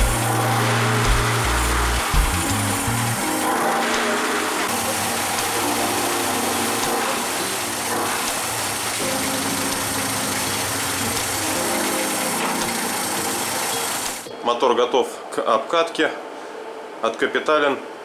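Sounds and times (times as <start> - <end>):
outboard motor running: 0.0 - 14.3.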